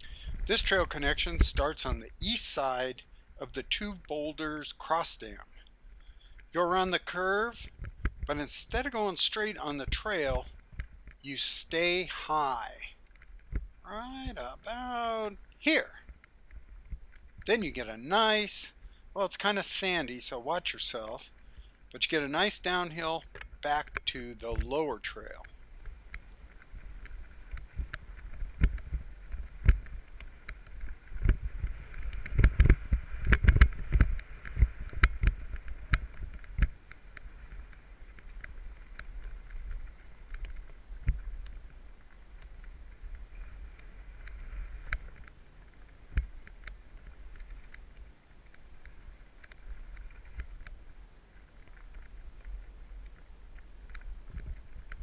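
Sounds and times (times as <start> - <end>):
wind rumble on microphone: 0.0 - 2.4, 7.2 - 8.9, 25.4 - 55.0
bike knocking and rattling: 25.3 - 55.0.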